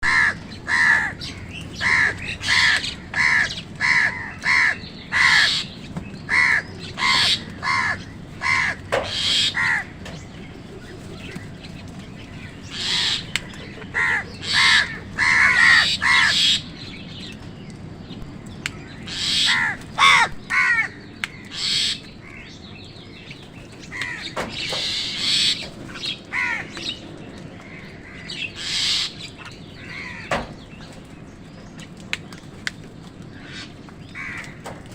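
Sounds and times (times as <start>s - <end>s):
crows cawing: 0.0s - 10.2s, 12.6s - 16.8s, 19.0s - 22.5s, 23.8s - 27.0s, 27.6s - 30.8s, 33.3s - 34.8s.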